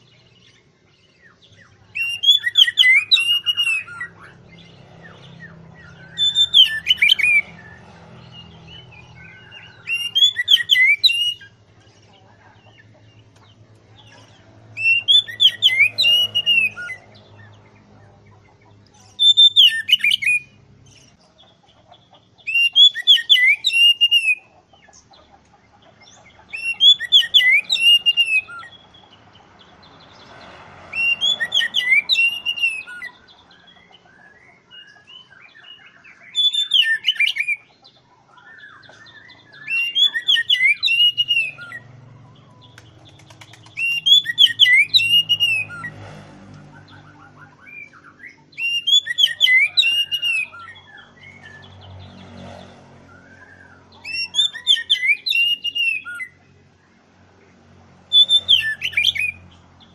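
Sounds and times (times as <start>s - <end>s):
bird singing whistled phrases: 2.0s - 4.2s, 6.0s - 7.5s, 9.2s - 11.6s, 14.8s - 17.0s, 19.2s - 20.6s, 22.5s - 24.4s, 26.5s - 28.8s, 31.0s - 33.1s, 38.6s - 41.8s, 43.7s - 45.8s, 47.4s - 50.8s, 54.1s - 56.3s.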